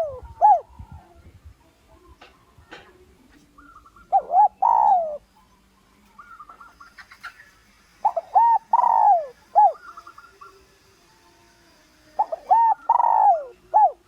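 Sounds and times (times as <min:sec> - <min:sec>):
dove cooing: 0:00.0 - 0:01.0, 0:03.6 - 0:05.3, 0:06.2 - 0:10.6, 0:12.2 - 0:14.0.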